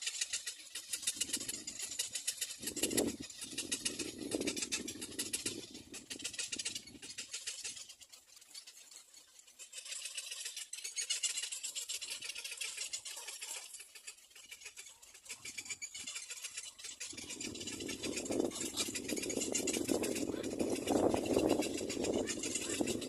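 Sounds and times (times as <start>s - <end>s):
bird chick high-pitched chattering: 0.0s - 23.0s.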